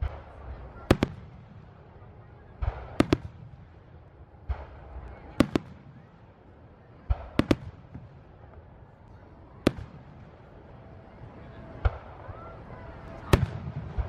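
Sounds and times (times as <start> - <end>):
firework dull boom: 0.0 - 6.2, 13.1 - 14.0
firework sharp bangs: 0.0 - 6.2, 7.0 - 8.7, 9.6 - 10.5, 11.7 - 12.3, 13.0 - 14.0.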